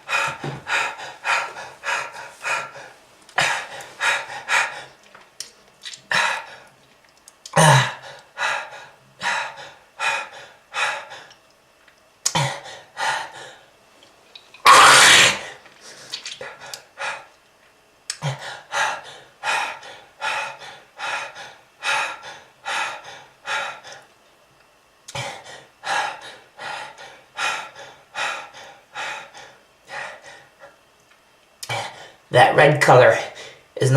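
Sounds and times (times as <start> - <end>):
harsh coughing: 14.7 - 15.5.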